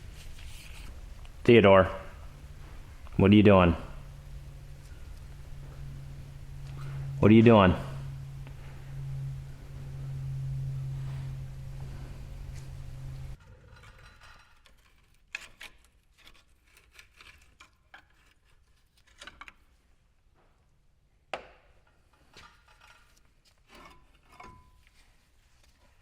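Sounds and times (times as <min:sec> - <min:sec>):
low hum: 0:00.0 - 0:13.4.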